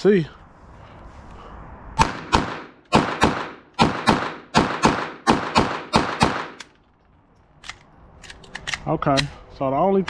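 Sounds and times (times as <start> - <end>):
pistol shots with echo: 2.0 - 6.6.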